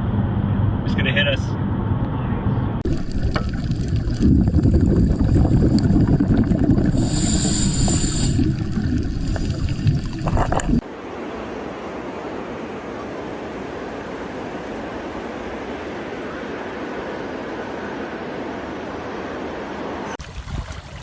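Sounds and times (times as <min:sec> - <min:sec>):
wind: 0:00.0 - 0:21.0
wind buffeting microphone: 0:02.8 - 0:07.1
rushing water: 0:02.8 - 0:21.0.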